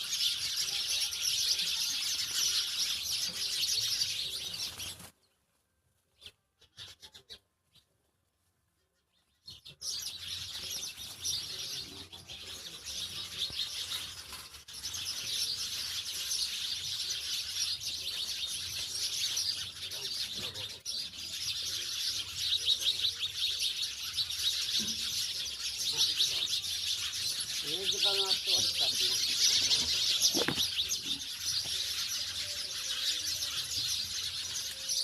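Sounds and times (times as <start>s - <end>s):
sparrows chirping: 0.0s - 5.4s, 6.1s - 8.0s, 8.8s - 35.0s.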